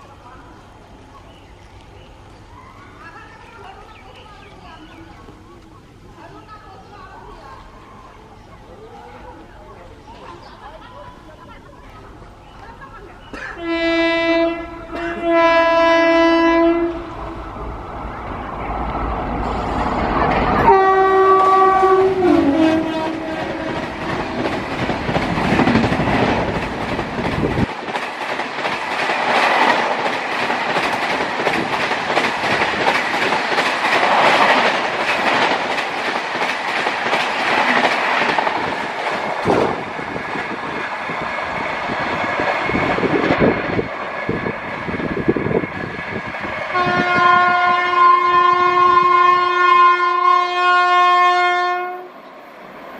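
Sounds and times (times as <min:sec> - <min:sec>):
train horn: 0:13.6 - 0:17.4, 0:20.6 - 0:24.7, 0:46.7 - 0:52.2
train wheels clacking over rail joints: 0:19.5 - 0:41.1.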